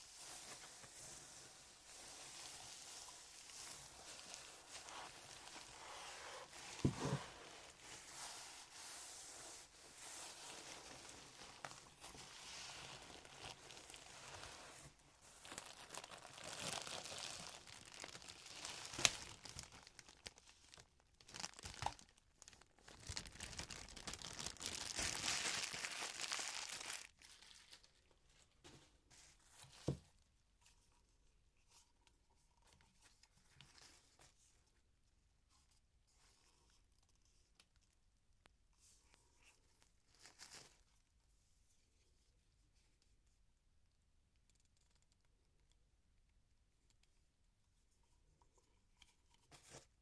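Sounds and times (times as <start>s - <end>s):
packaging crinkling and tearing: 10.6s - 27.9s.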